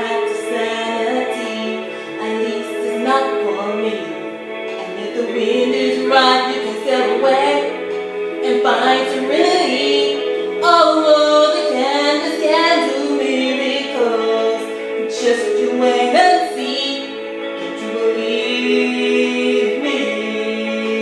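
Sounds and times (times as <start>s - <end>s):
a cappella female vocal harmonies: 0.0s - 21.0s.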